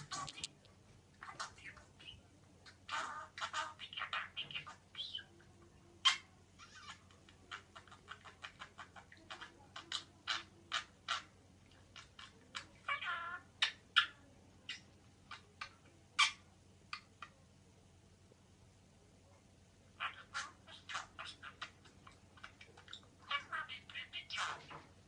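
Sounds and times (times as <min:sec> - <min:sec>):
budgerigar chirping: 0:02.8 - 0:05.3, 0:12.0 - 0:17.2, 0:20.0 - 0:24.8.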